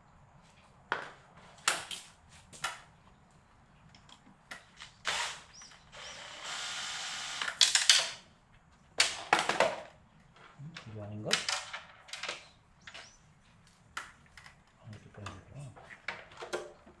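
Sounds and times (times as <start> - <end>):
plastic clicks and knocks: 16.0 - 17.0.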